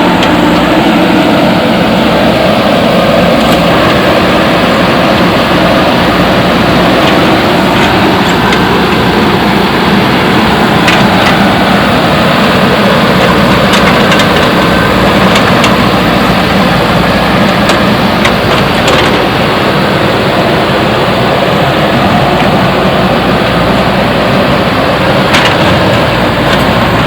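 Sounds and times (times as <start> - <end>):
sharp clicks and knocks: 0.0 - 0.9, 3.3 - 19.5, 24.4 - 27.0
backhoe diesel engine running: 0.0 - 27.0.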